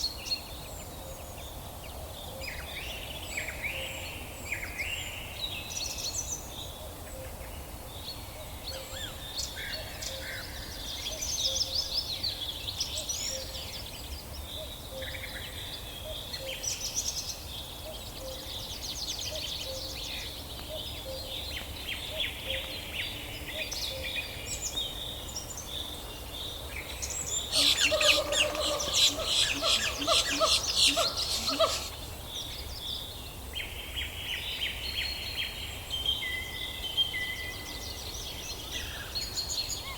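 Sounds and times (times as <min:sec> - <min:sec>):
birds chirping and calling: 0:27.0 - 0:32.3.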